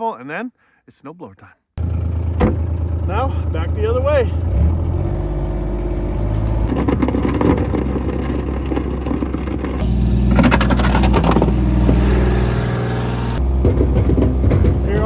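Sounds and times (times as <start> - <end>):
vehicle engine under load: 1.8 - 15.0
gravel scraping and clattering: 5.5 - 15.0.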